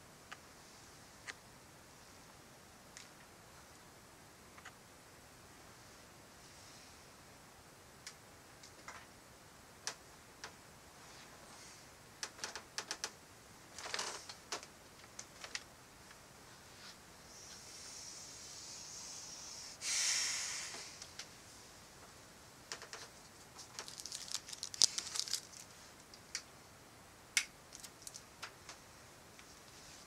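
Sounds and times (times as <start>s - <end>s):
rustling hiss burst: 17.3s - 21.1s.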